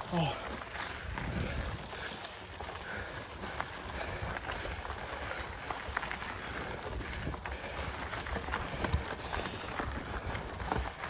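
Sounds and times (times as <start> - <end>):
bike clicking on trail: 0.0 - 11.0
person breathing hard: 0.7 - 8.1.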